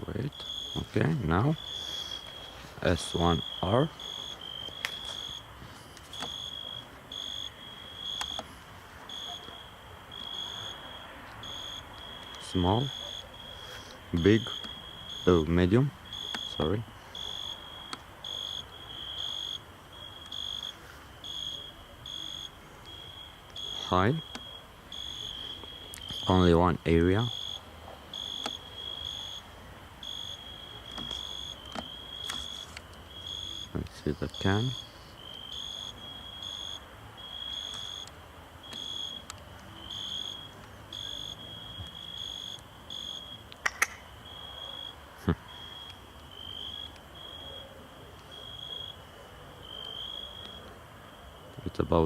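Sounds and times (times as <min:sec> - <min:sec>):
crickets chirping: 0:00.0 - 0:52.0
sharp click: 0:43.5 - 0:44.0.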